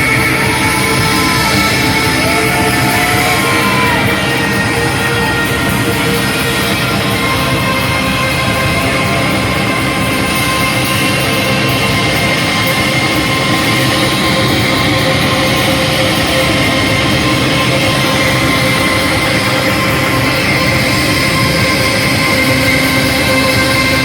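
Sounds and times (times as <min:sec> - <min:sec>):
live rock band playing: 0:00.0 - 0:12.0.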